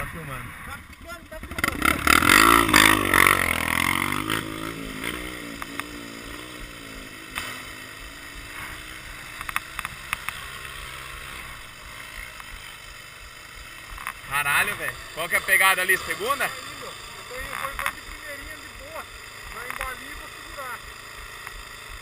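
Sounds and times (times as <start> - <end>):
motorcycle engine running: 0.0 - 22.0
sharp clicks: 9.4 - 10.4.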